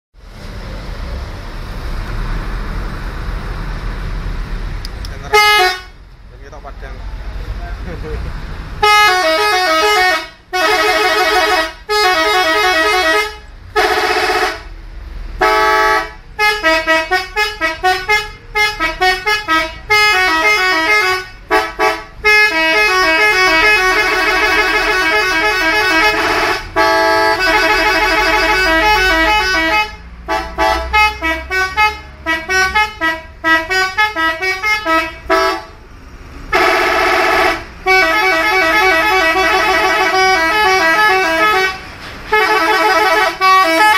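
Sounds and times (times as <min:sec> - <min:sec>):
multi-trumpet horn notes: 0:08.8 - 0:14.7, 0:15.4 - 0:35.7, 0:36.5 - 0:43.9.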